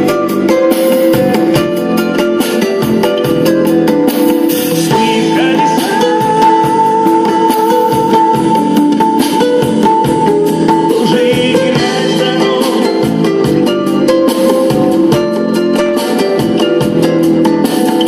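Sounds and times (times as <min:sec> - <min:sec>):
guitar: 0:00.0 - 0:18.0
steady beat: 0:00.0 - 0:18.0
long held high note: 0:04.8 - 0:09.0.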